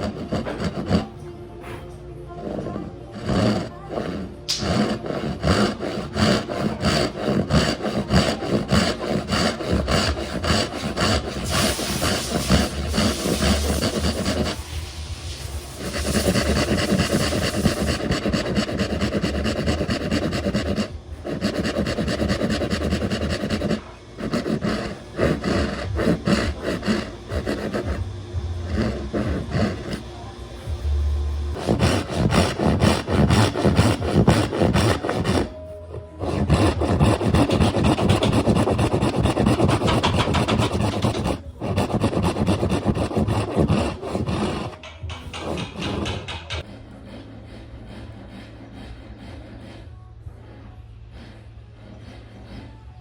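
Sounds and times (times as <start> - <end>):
hand tool rasping wood: 0.0 - 1.2, 2.5 - 30.1, 31.5 - 53.0.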